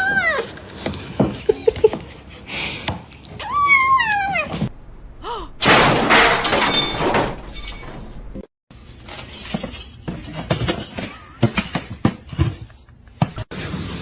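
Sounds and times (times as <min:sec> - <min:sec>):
loud shattering crash: 0:05.6 - 0:08.0.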